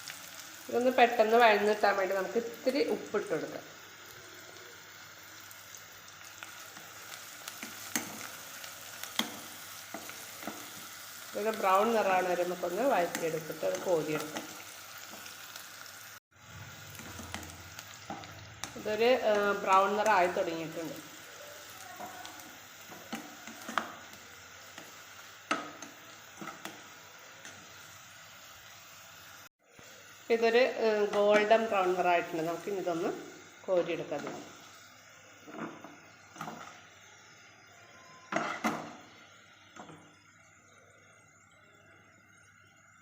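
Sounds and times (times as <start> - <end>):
onions sizzling in a pan: 0.0 - 43.0
spoon scraping a pan: 21.7 - 27.8, 35.4 - 36.9, 38.3 - 39.0.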